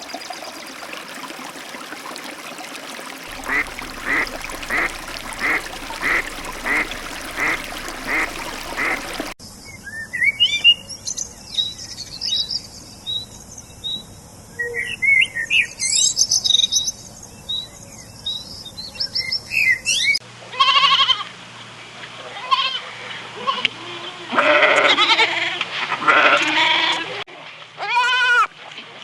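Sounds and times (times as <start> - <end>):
duck quacking: 3.3 - 9.3
goat bleating: 20.5 - 21.2, 27.8 - 28.5.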